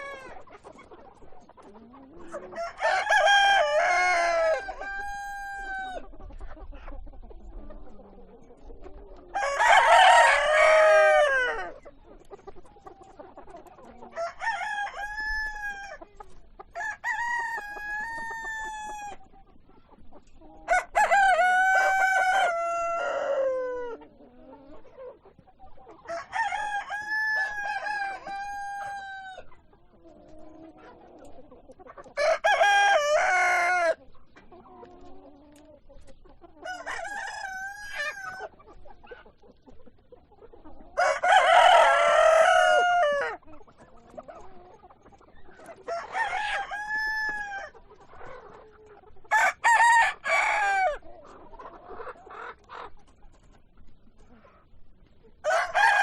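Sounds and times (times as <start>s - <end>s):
hens clucking softly: 0.0s - 56.0s
rooster crowing: 2.6s - 6.0s, 9.3s - 11.7s, 20.7s - 23.9s, 26.1s - 29.4s, 32.2s - 34.0s, 41.0s - 43.4s, 45.9s - 47.7s, 49.3s - 51.0s, 55.4s - 56.0s.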